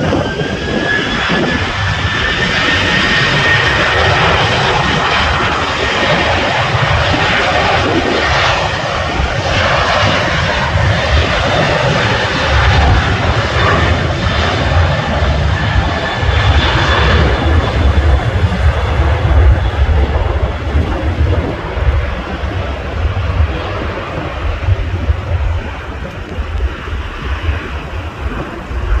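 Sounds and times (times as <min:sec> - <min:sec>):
aircraft engines roaring: 0:00.0 - 0:29.0
wind buffeting microphone: 0:00.0 - 0:29.0.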